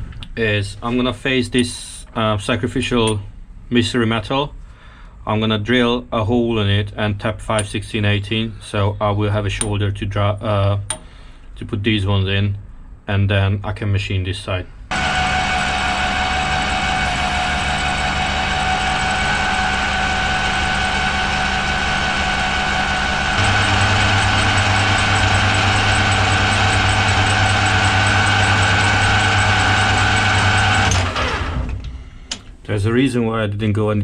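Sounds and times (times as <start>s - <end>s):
metal lathe running: 14.9s - 31.7s.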